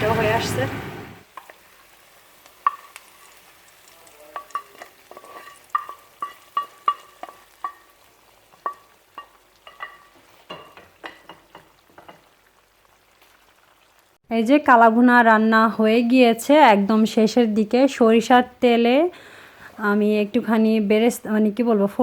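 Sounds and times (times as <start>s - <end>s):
faint sizzle: 1.2s - 14.6s
metal spoon clinking against pot: 4.3s - 7.9s, 8.5s - 12.2s.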